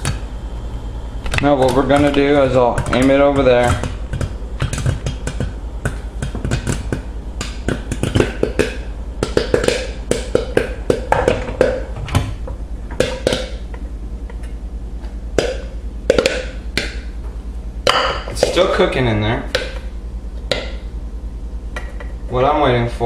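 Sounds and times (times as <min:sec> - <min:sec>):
steady low hum: 0:00.0 - 0:23.0
corn kernels popping: 0:01.3 - 0:12.0, 0:15.4 - 0:17.0, 0:17.9 - 0:18.9.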